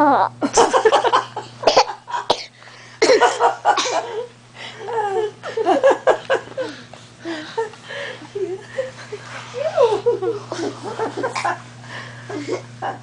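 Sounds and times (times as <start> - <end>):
child making gliding vocal sounds: 0.0 - 0.3
laughter: 0.4 - 2.3, 3.0 - 4.3, 5.1 - 11.6, 12.3 - 13.0.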